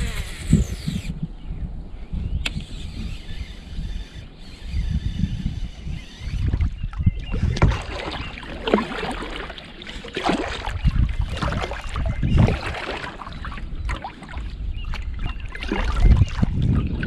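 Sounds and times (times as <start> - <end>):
wind on microphone: 0.0 - 17.0
water splashing around boat: 6.4 - 17.0.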